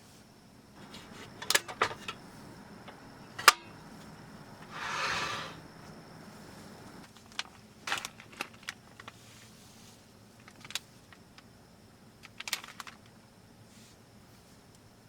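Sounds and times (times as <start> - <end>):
small clicks of objects handled: 10.4 - 11.5, 12.2 - 13.2.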